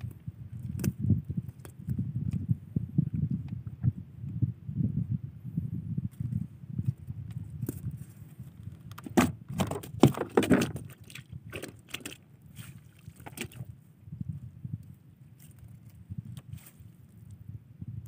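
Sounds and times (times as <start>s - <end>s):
low steady rumble: 0.0s - 18.0s
irregular splashes and knocks: 9.0s - 13.7s.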